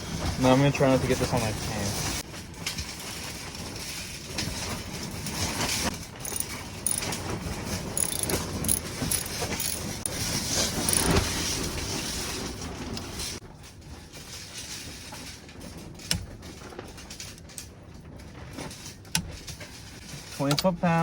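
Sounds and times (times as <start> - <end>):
hand tools clicking and rattling: 6.0 - 11.4.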